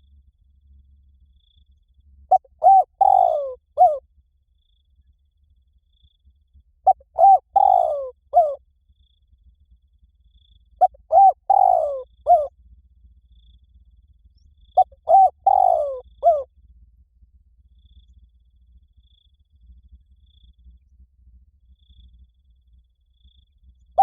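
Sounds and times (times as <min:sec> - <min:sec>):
dove cooing: 0:02.3 - 0:04.0, 0:06.8 - 0:08.6, 0:10.8 - 0:12.5, 0:14.8 - 0:16.5.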